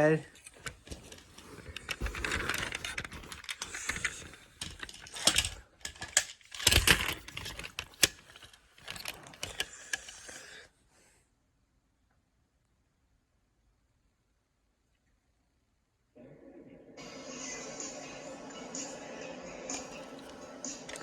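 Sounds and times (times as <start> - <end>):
small hard objects clicking and rattling: 0.4 - 10.3.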